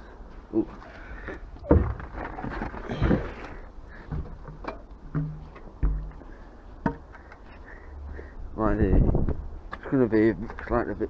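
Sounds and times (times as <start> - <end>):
rustling: 0.3 - 7.6
knocks and clatters of handled objects: 1.6 - 7.5.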